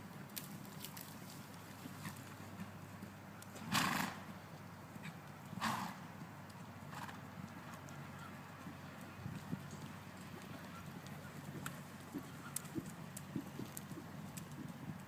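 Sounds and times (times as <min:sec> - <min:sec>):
horse hooves clip-clopping: 0:00.0 - 0:15.0
short noisy horse sounds: 0:03.6 - 0:04.3, 0:05.0 - 0:06.1.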